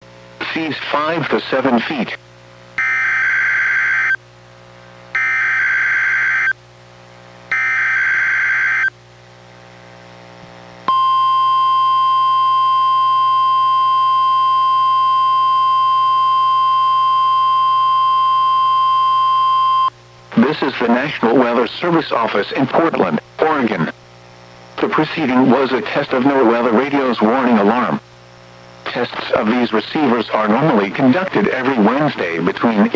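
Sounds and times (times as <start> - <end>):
steady warning alarm tone: 2.8 - 4.2, 5.2 - 6.6, 7.5 - 8.9, 10.9 - 19.9.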